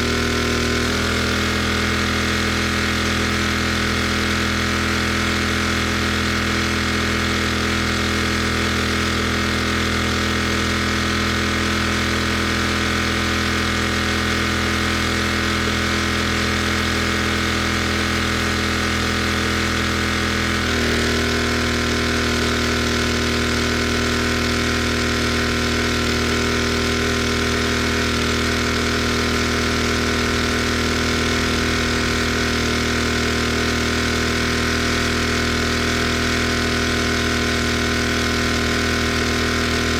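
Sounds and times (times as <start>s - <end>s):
pressure washer engine running: 0.0s - 39.9s.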